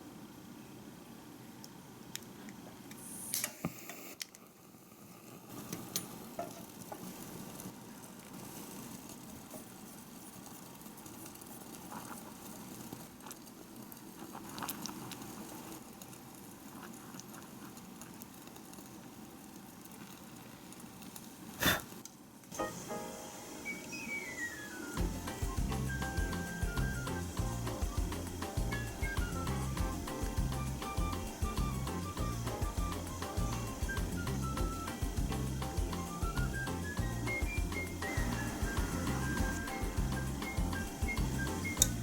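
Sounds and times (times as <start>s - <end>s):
faint sizzling in a small pan: 0.0s - 42.0s
tiny utensils clicking and tapping: 25.0s - 42.0s.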